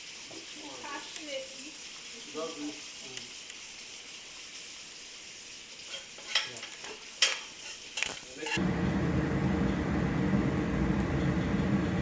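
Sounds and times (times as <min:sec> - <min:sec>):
food sizzling in a frying pan: 0:00.0 - 0:09.0
utensil clinking against pan: 0:05.9 - 0:08.6
low rumble: 0:08.6 - 0:12.0.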